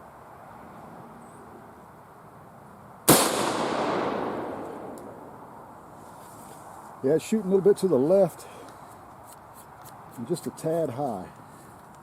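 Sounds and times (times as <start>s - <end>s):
rifle shot echoing: 3.1s - 5.5s.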